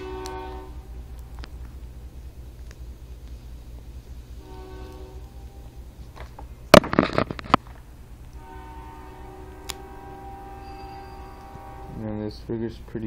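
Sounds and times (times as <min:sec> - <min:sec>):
faint train horn: 0:00.0 - 0:01.0, 0:04.3 - 0:06.0, 0:08.3 - 0:12.8
train rumbling: 0:00.0 - 0:13.0.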